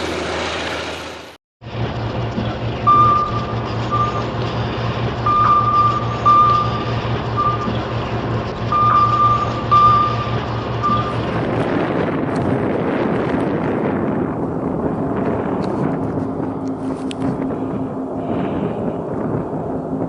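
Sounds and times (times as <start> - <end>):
heavy vehicle engine running: 0.0 - 20.0
reversing alarm beeping: 2.8 - 4.4, 5.2 - 7.9, 8.6 - 11.3.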